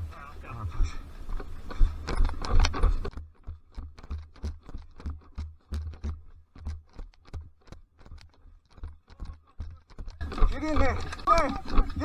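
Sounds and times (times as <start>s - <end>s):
running footsteps crunching: 0.0s - 3.5s, 10.2s - 12.0s.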